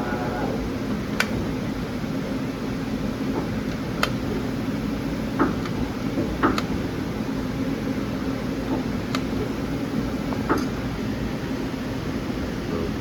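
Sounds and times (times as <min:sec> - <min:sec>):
machine-shop background hum: 0:00.0 - 0:13.0
sharp clicks and knocks: 0:05.4 - 0:06.8, 0:10.3 - 0:10.8.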